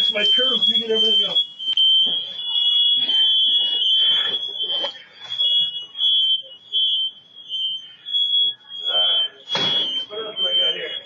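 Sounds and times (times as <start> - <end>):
smoke alarm tone: 0.0 - 11.0.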